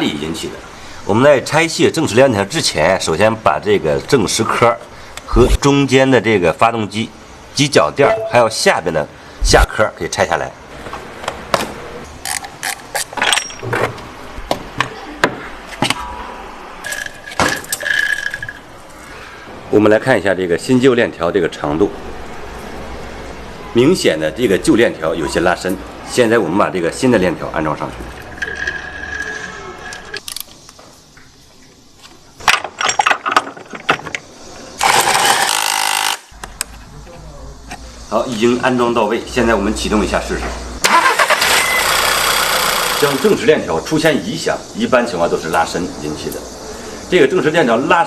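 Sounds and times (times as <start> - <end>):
metallic ring: 8.0 - 8.6
metal clinks and rattles: 13.0 - 13.7, 16.8 - 18.6
metal engine parts clanking: 13.2 - 13.8, 32.4 - 34.2.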